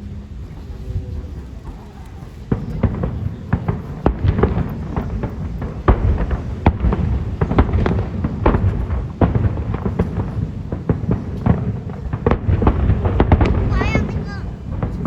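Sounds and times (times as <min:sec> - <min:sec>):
fireworks bursts and bangs: 0:00.0 - 0:15.0
rumble of explosions: 0:00.0 - 0:15.0.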